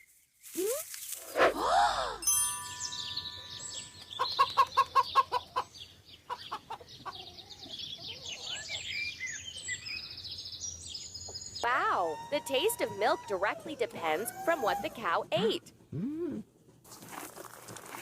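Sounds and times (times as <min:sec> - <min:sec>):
high chirping calls: 0:02.3 - 0:13.4
chickens clucking: 0:03.8 - 0:08.6.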